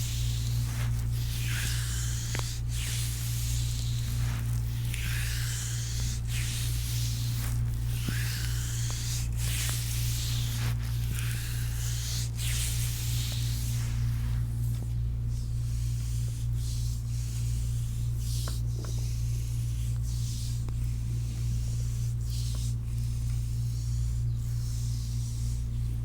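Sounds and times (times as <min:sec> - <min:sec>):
hands stroking skin: 0:00.0 - 0:14.9
low electrical hum: 0:00.0 - 0:26.0.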